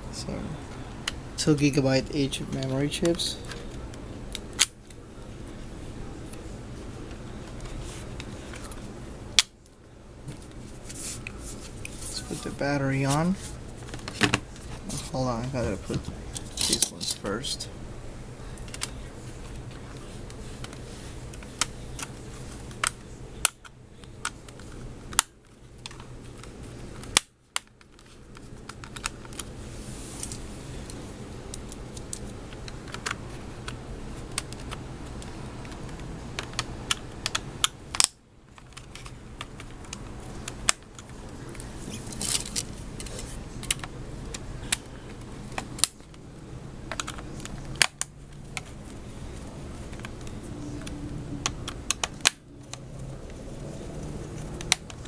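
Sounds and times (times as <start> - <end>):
steady low hum: 0.0 - 55.0
plastic parts clicking and tapping: 22.7 - 29.5, 31.5 - 46.2, 46.8 - 49.0, 49.7 - 52.9.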